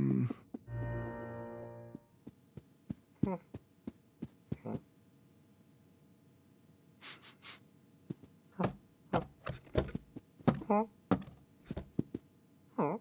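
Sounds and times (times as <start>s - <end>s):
sharp taps: 8.6s - 11.9s.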